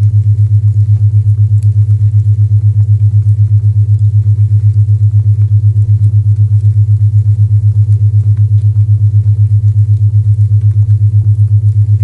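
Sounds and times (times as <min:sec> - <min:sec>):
low pulsing tone: 0:10.2 - 0:12.0.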